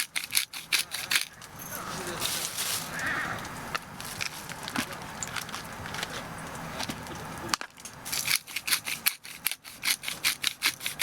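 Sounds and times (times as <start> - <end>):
hand saw cutting wood: 0.0 - 1.3, 8.1 - 11.0.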